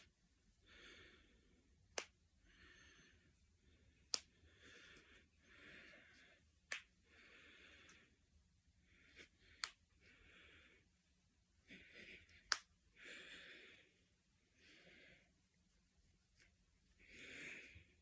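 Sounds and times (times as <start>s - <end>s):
knuckles cracking: 1.9s - 2.2s, 4.1s - 4.4s, 6.7s - 7.0s, 9.6s - 9.8s, 12.3s - 12.8s.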